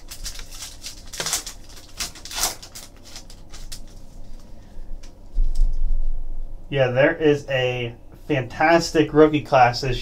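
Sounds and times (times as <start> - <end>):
trading cards flipping: 0.0 - 4.5.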